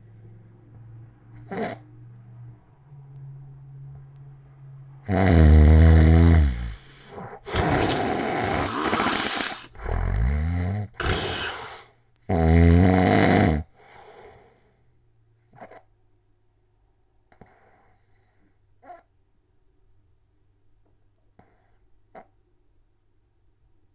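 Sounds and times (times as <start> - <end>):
man snoring loudly: 5.0 - 13.7
faint breathing: 5.1 - 10.3, 11.0 - 11.9, 13.8 - 14.8.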